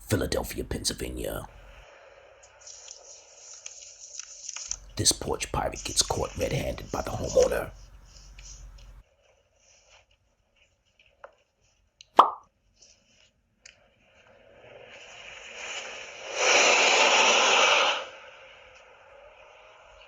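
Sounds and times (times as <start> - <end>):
low hiss: 0.0 - 1.8, 4.7 - 9.0.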